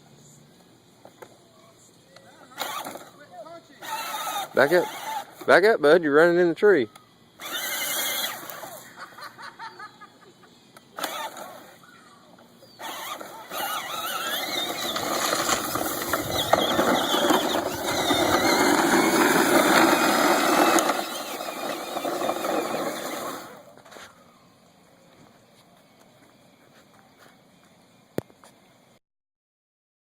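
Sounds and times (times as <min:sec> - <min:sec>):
toy vehicle electric motors whining: 0:02.5 - 0:03.2, 0:03.8 - 0:05.6, 0:07.3 - 0:09.0, 0:10.8 - 0:12.0, 0:12.6 - 0:24.3.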